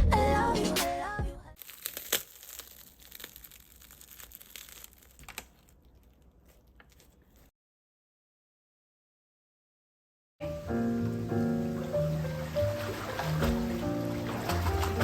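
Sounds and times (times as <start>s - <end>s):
faint rustling and crinkling: 1.6s - 7.5s.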